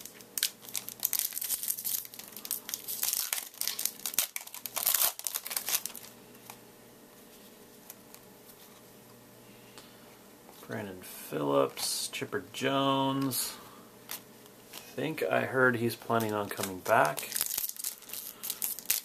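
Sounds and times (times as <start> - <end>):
foil wrapper crinkling and tearing: 0.0 - 6.1, 16.2 - 19.0.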